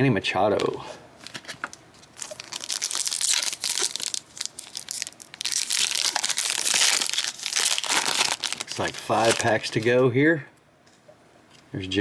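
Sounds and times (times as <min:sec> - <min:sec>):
foil wrapper crinkling and tearing: 0:00.6 - 0:10.0.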